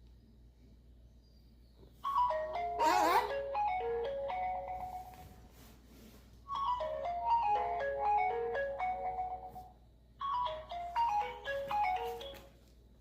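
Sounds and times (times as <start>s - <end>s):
mobile phone ringtone melody: 2.0s - 5.4s, 6.5s - 12.7s.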